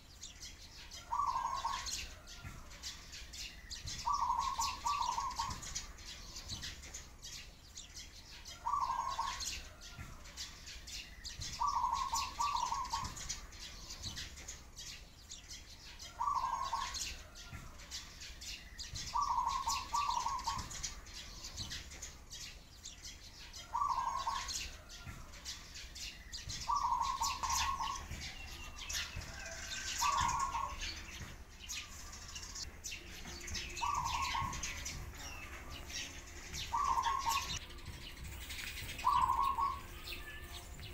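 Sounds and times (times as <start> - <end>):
sparrows chirping: 0.0 - 40.9
dove cooing: 1.0 - 2.4, 4.0 - 5.7, 8.6 - 9.4, 11.6 - 13.2, 16.1 - 17.0, 19.1 - 20.8, 23.6 - 24.5, 26.7 - 28.1, 33.8 - 34.7, 36.6 - 37.6, 39.0 - 40.2.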